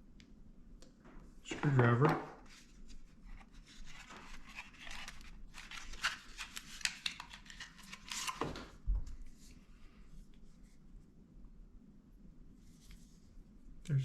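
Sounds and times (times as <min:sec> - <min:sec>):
packaging rustling and crinkling: 0:03.6 - 0:08.7.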